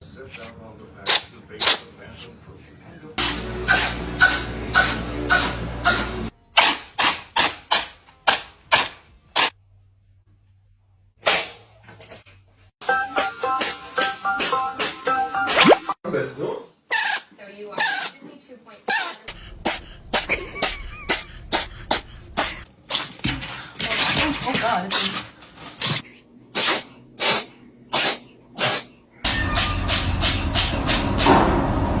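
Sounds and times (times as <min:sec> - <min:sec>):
steady background hum: 0:00.0 - 0:07.8
cats sneezing: 0:00.4 - 0:02.3, 0:16.9 - 0:18.2, 0:18.9 - 0:23.1, 0:25.9 - 0:29.2.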